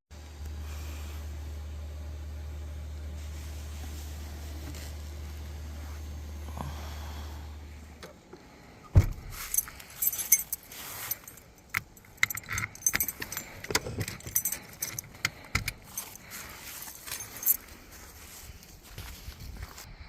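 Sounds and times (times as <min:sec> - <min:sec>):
small metal pieces jingling: 0:09.4 - 0:17.7.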